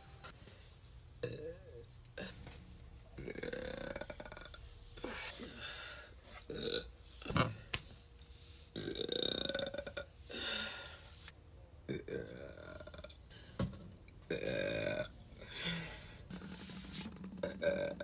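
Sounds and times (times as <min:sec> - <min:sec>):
person burping loudly: 0:03.2 - 0:04.6, 0:11.9 - 0:13.1, 0:14.3 - 0:15.1, 0:17.3 - 0:18.0.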